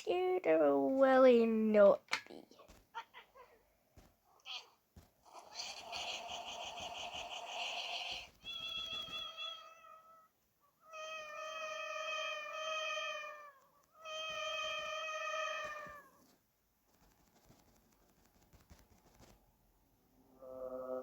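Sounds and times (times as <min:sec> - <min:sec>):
cat meows through speaker: 0:10.9 - 0:16.1.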